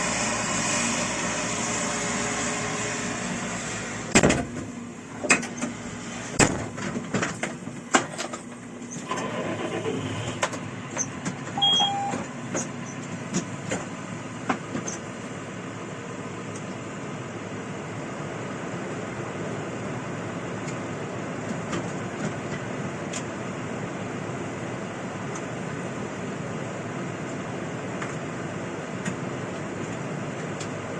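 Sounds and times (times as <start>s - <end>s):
harvest machinery engine running: 0.0s - 30.9s
short high tone: 11.6s - 12.2s.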